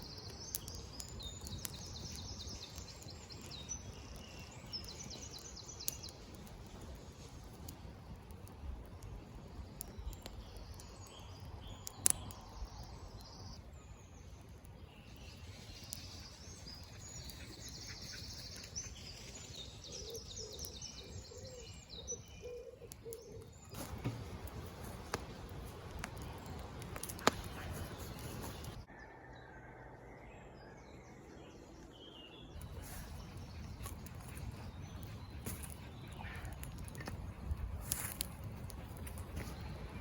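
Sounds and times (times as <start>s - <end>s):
birds chirping: 0.0s - 7.9s, 8.5s - 40.0s
sharp crack: 23.7s - 28.8s.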